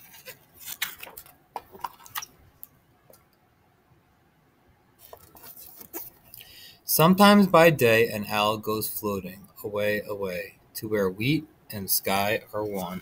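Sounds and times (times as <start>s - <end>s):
picture book page turning: 0.0s - 2.3s, 5.0s - 6.2s.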